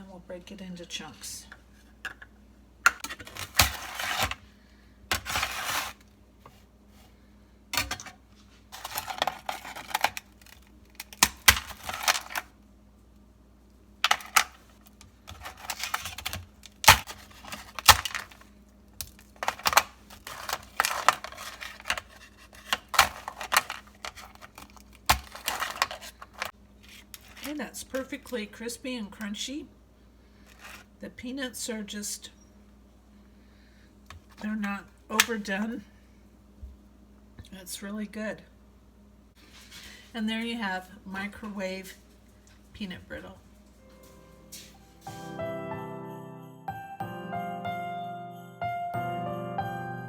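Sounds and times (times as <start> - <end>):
peanut brittle snapping: 10.0 - 12.4, 18.9 - 21.8
pieces clicking together: 19.0 - 26.5.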